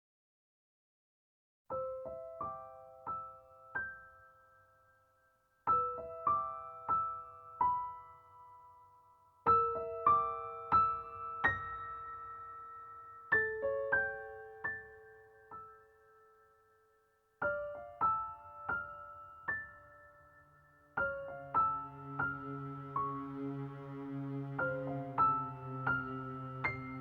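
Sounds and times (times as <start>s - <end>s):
slow piano melody: 1.7s - 27.0s.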